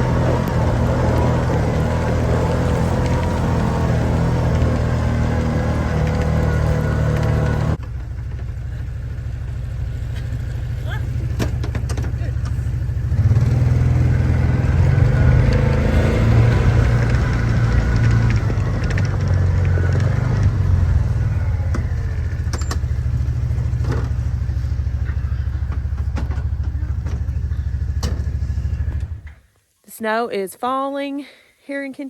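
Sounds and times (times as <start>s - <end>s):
vehicle engine running: 0.0s - 29.5s.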